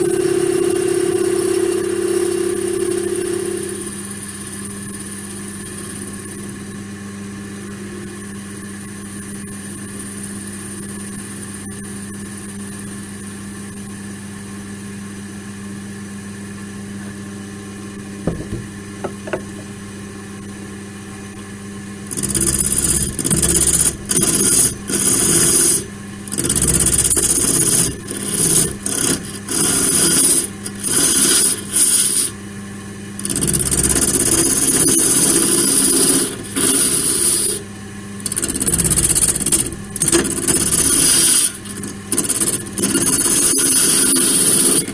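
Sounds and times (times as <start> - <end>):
wood lathe motor humming: 0.0 - 4.1, 18.3 - 19.8, 22.1 - 32.4, 33.2 - 44.9
tool scraping spinning wood: 18.3 - 19.8, 22.1 - 32.4, 33.2 - 44.9.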